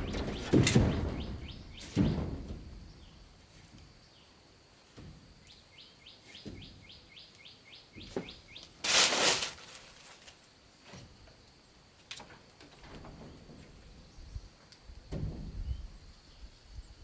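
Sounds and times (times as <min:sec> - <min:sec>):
soft knocks: 0:00.0 - 0:03.1.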